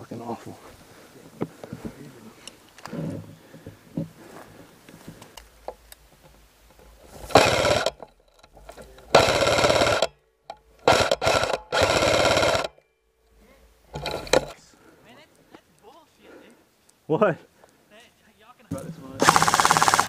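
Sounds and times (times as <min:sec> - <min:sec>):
airsoft rifle automatic bursts: 0:07.3 - 0:08.0, 0:09.1 - 0:10.1, 0:10.8 - 0:12.8, 0:19.2 - 0:20.0.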